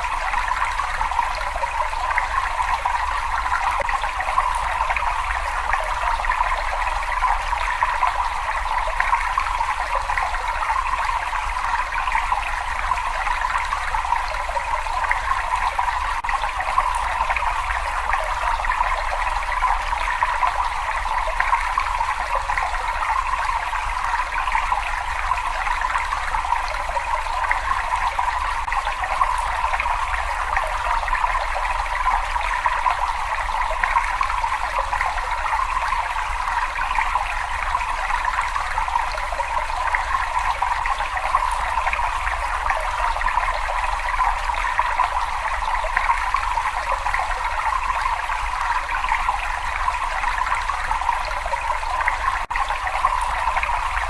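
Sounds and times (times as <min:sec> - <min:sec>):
water running and trickling: 0:00.0 - 0:54.0.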